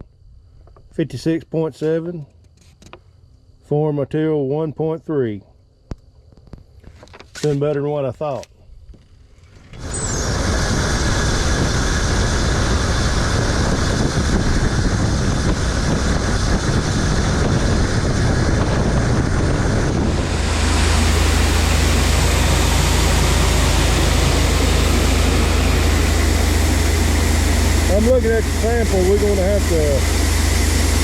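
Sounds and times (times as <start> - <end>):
combine harvester running: 9.4 - 31.0
low hum: 9.6 - 31.0.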